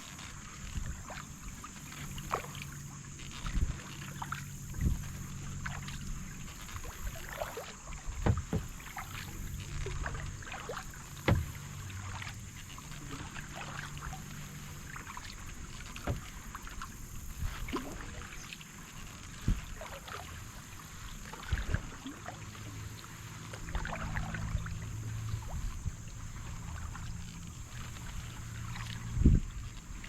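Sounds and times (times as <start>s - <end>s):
paddle splashing water: 0.0s - 30.0s
sharp knocks: 8.2s - 8.8s, 11.2s - 11.6s.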